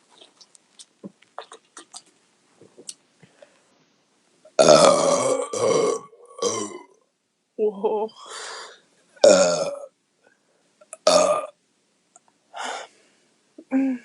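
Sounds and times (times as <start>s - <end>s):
woman belching: 4.6s - 7.0s, 9.2s - 9.9s, 11.0s - 11.5s.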